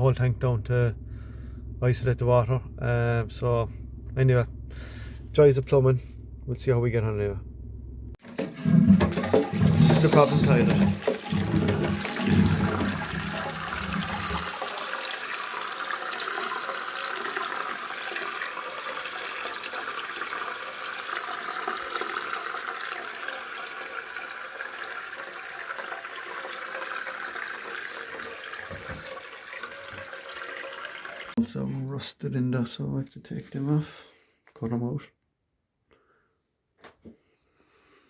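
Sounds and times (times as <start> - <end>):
water running in toilet: 8.2 - 31.4.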